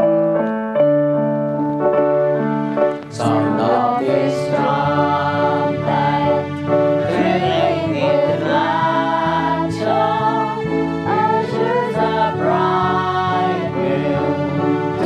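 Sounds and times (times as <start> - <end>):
keyboard accompaniment: 0.0 - 15.0
congregation singing a hymn: 3.1 - 15.0.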